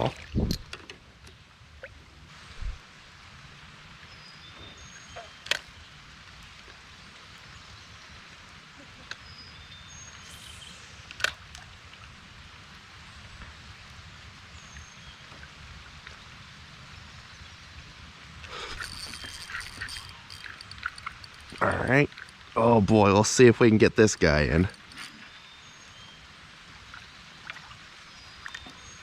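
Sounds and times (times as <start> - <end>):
steady outdoor hiss: 0.0 - 29.0
sharp clicks: 18.5 - 22.5.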